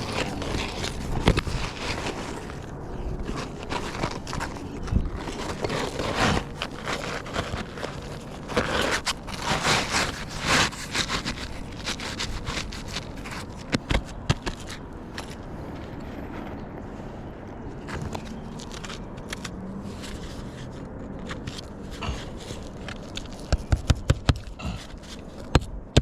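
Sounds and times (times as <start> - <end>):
scraping on roof shingles: 0.0 - 16.6.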